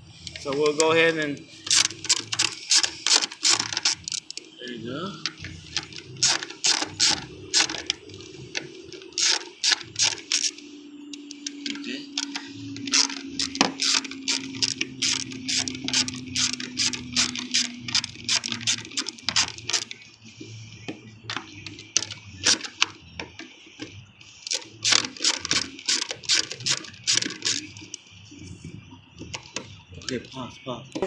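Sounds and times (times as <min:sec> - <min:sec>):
ratchet clicking: 0:01.6 - 0:04.4, 0:05.2 - 0:20.0, 0:21.6 - 0:23.0, 0:24.4 - 0:28.0.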